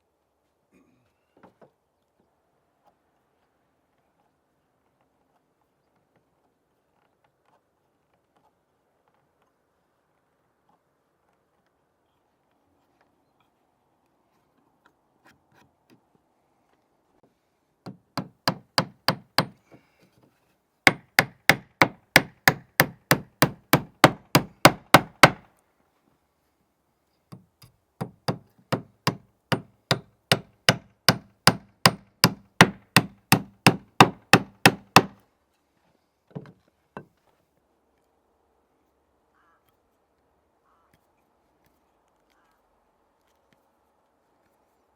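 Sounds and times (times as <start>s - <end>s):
hammer striking wooden shingles: 17.9s - 19.6s, 20.9s - 25.4s, 27.3s - 35.2s.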